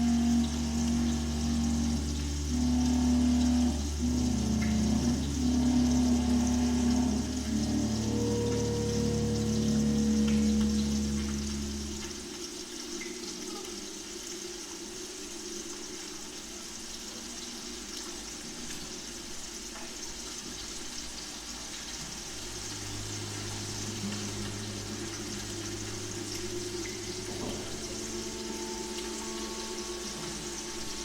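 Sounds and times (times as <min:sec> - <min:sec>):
held low instrumental tones: 0:00.0 - 0:12.5, 0:22.1 - 0:31.0
lower sustained note: 0:00.0 - 0:13.6, 0:22.1 - 0:31.0
ocean water rushing: 0:22.1 - 0:31.0.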